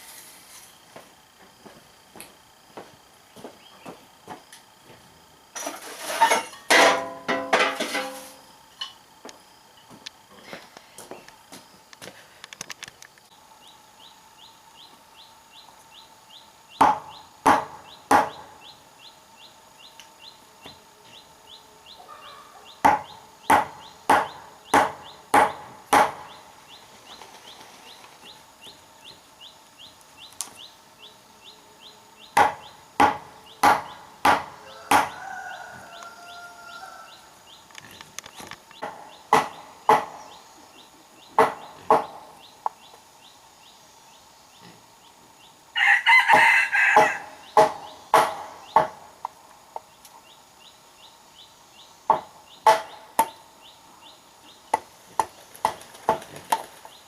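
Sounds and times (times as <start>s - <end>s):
tool striking wood: 16.8s - 18.5s, 22.8s - 26.4s, 32.4s - 35.2s, 38.8s - 40.2s, 41.4s - 42.2s, 47.0s - 49.1s, 52.1s - 53.4s
bird calling: 17.1s - 23.2s.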